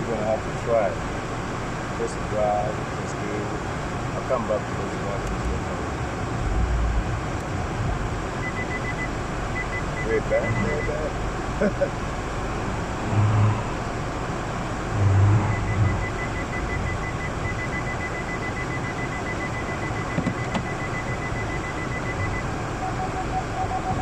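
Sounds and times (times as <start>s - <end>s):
car interior driving noise: 0.0s - 24.0s
dashboard warning chime beeping: 8.4s - 11.1s, 15.0s - 24.0s.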